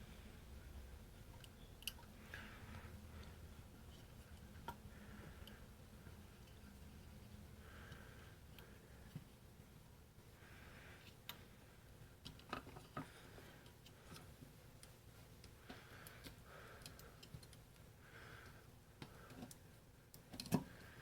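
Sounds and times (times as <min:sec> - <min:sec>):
faint clicks and ticks: 0:01.2 - 0:06.7, 0:11.0 - 0:11.5, 0:12.1 - 0:21.0.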